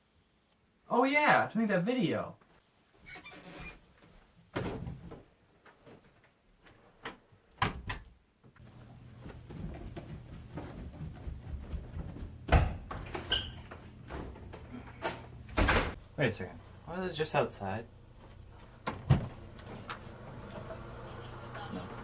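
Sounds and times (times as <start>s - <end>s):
door knocks and thumps: 11.8s - 13.2s.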